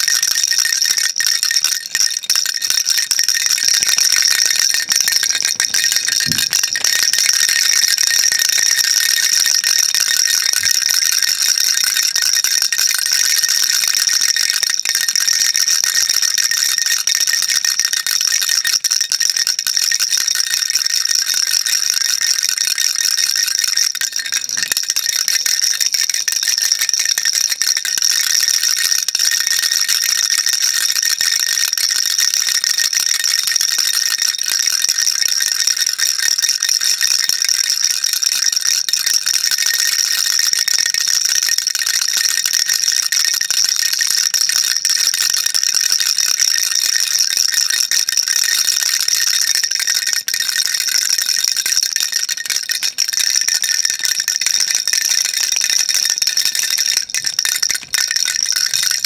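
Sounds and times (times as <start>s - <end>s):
baby rattle shaken: 0.0s - 29.6s, 50.2s - 59.0s.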